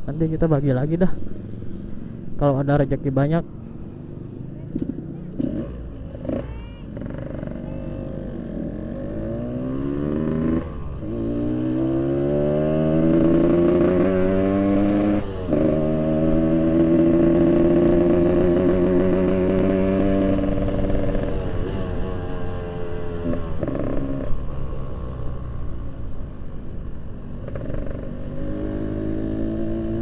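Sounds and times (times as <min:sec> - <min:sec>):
motorcycle engine accelerating: 0:01.2 - 0:26.4, 0:27.4 - 0:30.0.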